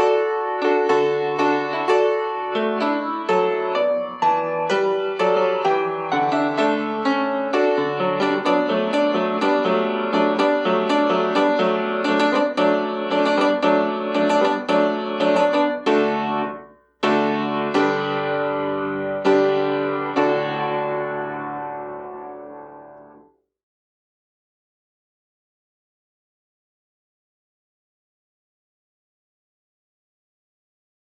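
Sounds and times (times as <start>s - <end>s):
piano music: 0.0s - 23.3s.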